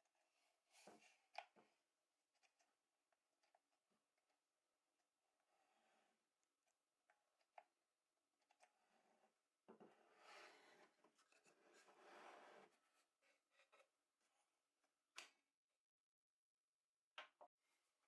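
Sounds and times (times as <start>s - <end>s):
faint scratching on a surface: 9.8s - 13.9s.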